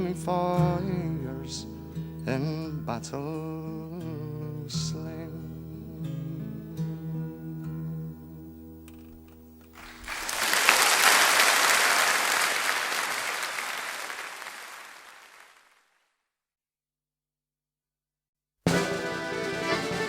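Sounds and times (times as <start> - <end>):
audience applause: 9.7 - 15.9.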